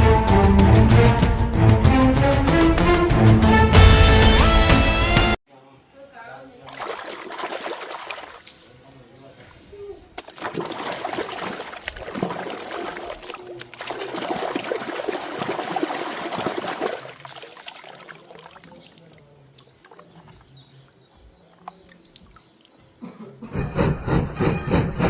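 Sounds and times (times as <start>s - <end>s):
water pouring and trickling: 6.6s - 8.8s, 10.2s - 23.0s
faint water drips: 6.6s - 9.4s, 10.2s - 23.0s.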